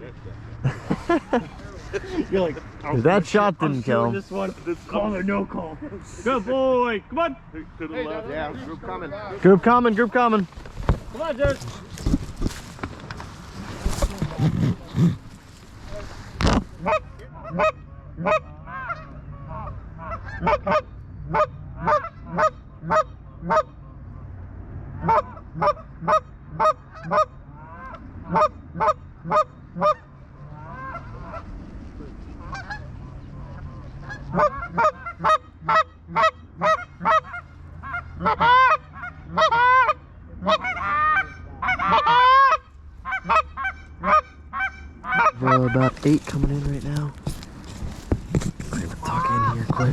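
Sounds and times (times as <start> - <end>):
geese honking: 13.6 - 31.7, 32.3 - 47.4, 48.3 - 49.9.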